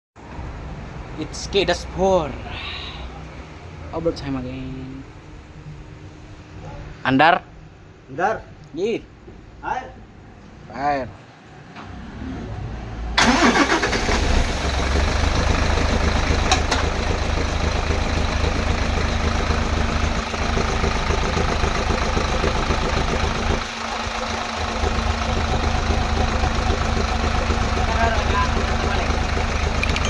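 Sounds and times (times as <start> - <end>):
diesel engine running: 13.2 - 30.0.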